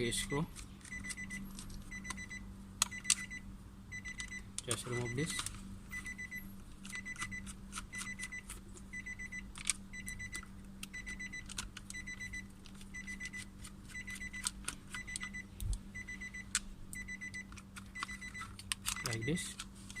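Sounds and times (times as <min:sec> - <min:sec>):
car warning chime beeping: 0:00.2 - 0:07.4, 0:08.0 - 0:11.4, 0:15.0 - 0:18.4.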